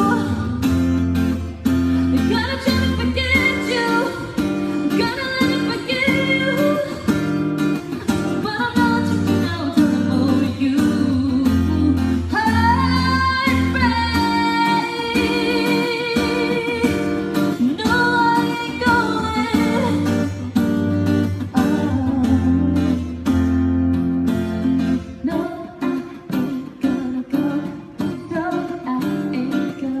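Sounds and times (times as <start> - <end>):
person singing with vibrato: 0.0 - 23.5, 24.7 - 30.0
strummed acoustic guitar: 0.0 - 30.0.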